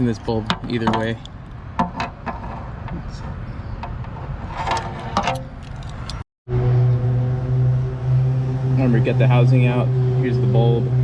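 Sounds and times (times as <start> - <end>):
engine idling hum: 5.3 - 11.0.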